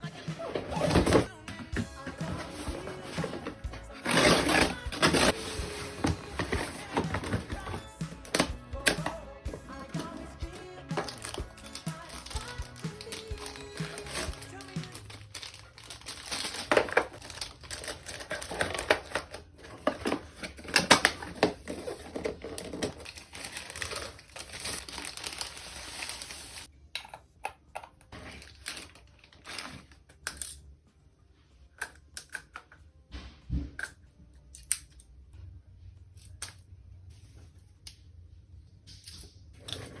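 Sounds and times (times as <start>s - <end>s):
plastic and paper crinkling: 2.0s - 9.1s, 9.9s - 26.7s.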